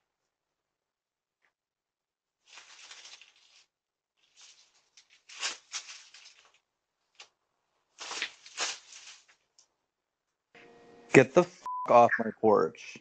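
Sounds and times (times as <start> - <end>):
rustling and scuffling: 2.4 - 7.3, 7.9 - 9.5.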